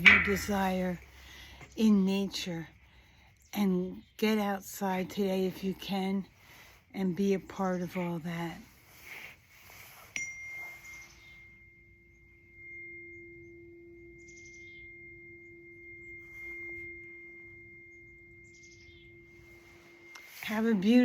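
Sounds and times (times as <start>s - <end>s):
tuning fork ringing: 0.0s - 1.0s, 10.0s - 21.0s.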